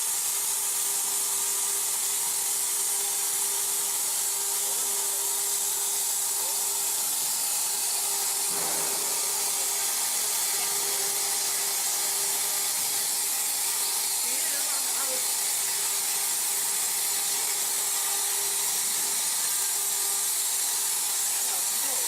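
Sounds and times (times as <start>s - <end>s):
plasma torch hissing: 0.0s - 22.0s.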